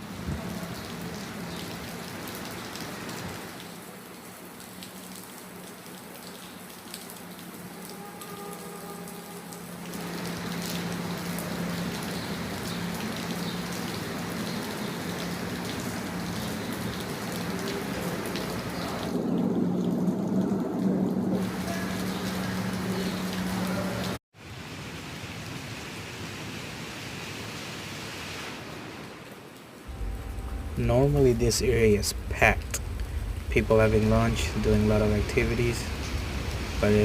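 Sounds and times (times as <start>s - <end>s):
rain on hard surfaces: 0.0s - 37.0s
constant low hum: 29.9s - 37.0s.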